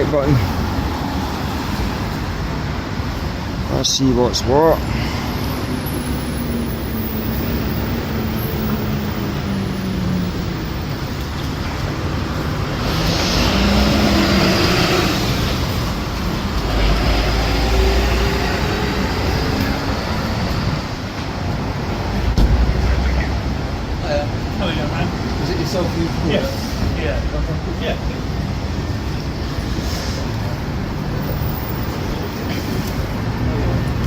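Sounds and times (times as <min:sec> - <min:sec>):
road traffic passing: 0:00.0 - 0:34.0
loud vehicle passing: 0:11.8 - 0:21.0
deep rumble: 0:22.2 - 0:24.0.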